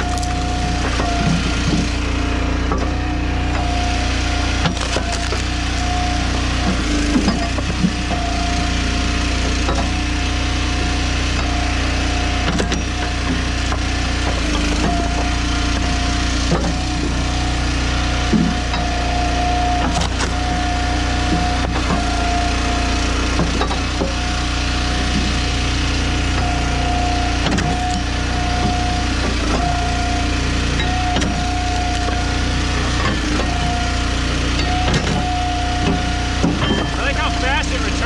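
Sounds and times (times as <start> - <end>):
wood splitting cracks: 0.0 - 0.9, 4.5 - 8.0, 19.8 - 20.5, 31.1 - 33.2
log splitter engine running: 0.0 - 38.0
high hydraulic whine: 18.3 - 38.0.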